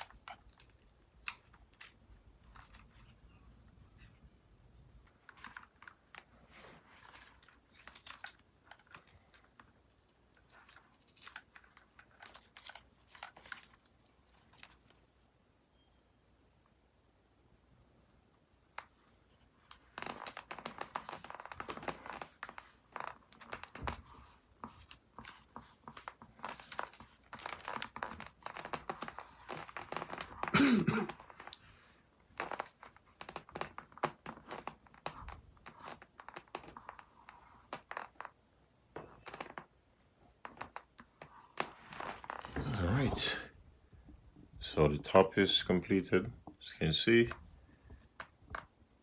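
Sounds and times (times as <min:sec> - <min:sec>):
hands scratching and rubbing plastic: 0:05.0 - 0:15.0, 0:18.7 - 0:31.6, 0:32.3 - 0:38.4, 0:39.0 - 0:39.7, 0:40.4 - 0:42.8.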